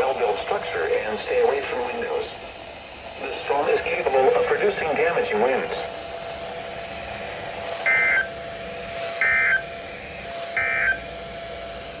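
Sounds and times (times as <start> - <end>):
faint steady hum: 0.0 - 12.0
data tone bursts: 7.8 - 8.3, 9.2 - 9.7, 10.6 - 11.1.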